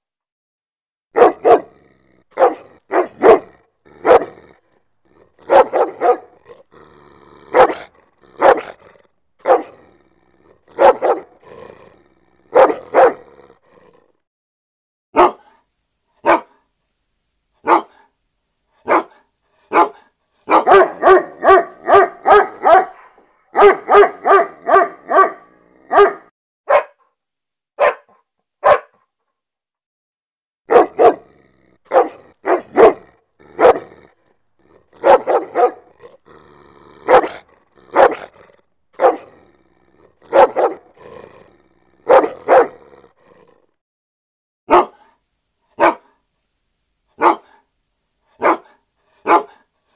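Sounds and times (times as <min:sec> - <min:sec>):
dog barking aggressively: 0:01.1 - 0:10.0, 0:10.6 - 0:13.5, 0:15.2 - 0:15.6, 0:16.2 - 0:16.6, 0:17.6 - 0:18.1, 0:18.8 - 0:27.0, 0:27.8 - 0:29.0, 0:30.7 - 0:43.1, 0:44.7 - 0:45.1, 0:45.8 - 0:46.2, 0:47.2 - 0:47.6, 0:48.4 - 0:49.7.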